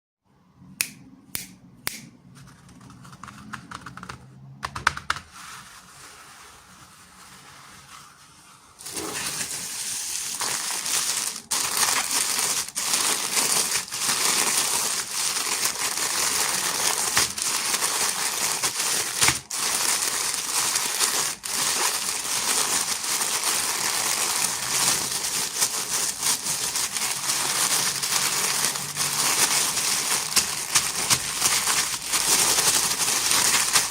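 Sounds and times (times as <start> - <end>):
plastic packaging crinkling: 8.8 - 33.9
plastic packaging clicks: 10.2 - 22.9, 24.4 - 33.9.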